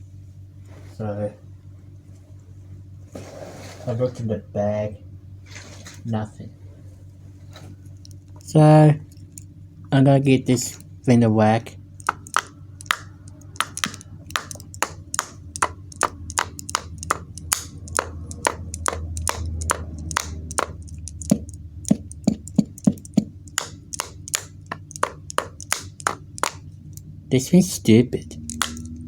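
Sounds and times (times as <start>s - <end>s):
small device clicking: 12.0s - 27.1s, 28.4s - 29.0s.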